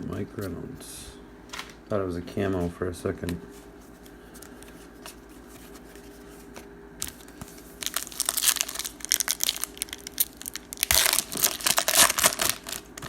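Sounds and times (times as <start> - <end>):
plastic wrapper tearing and crinkling: 7.0 - 13.0.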